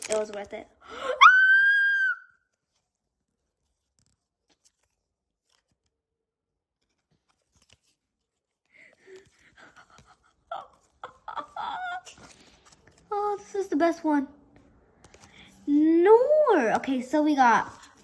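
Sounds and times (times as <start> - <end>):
wrapper crinkling: 0.0 - 0.7.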